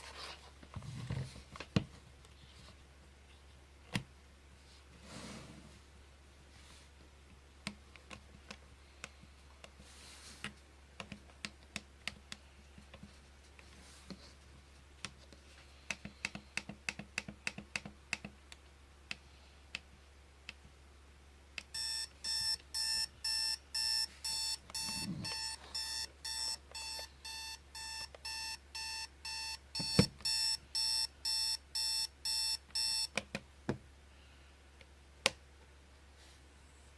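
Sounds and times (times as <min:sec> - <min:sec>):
alarm clock buzzer: 0:21.8 - 0:33.1.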